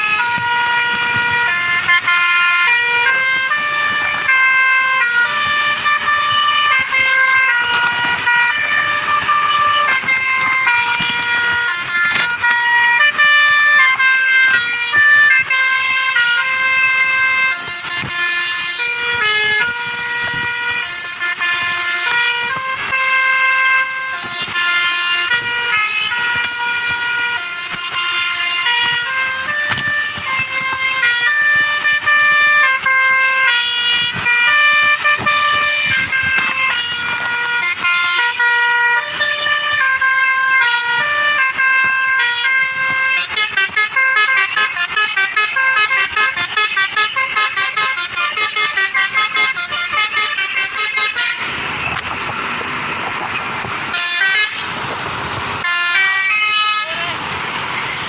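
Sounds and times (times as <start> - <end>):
bus horn playing a tune: 0.0 - 58.0.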